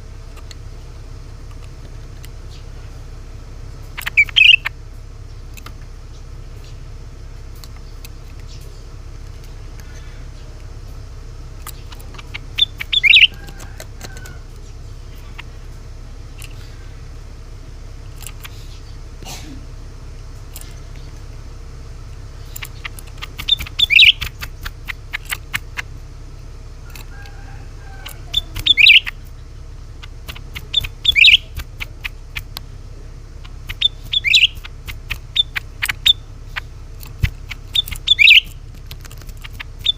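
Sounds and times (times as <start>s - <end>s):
steady low hum: 0.0s - 39.9s
bird clicking notes: 3.9s - 4.8s, 5.5s - 5.9s, 11.5s - 14.6s, 18.1s - 18.6s, 22.1s - 26.0s, 26.9s - 27.4s, 28.0s - 32.7s, 33.4s - 39.9s
bird sharp high notes: 28.4s - 29.2s, 30.6s - 31.6s.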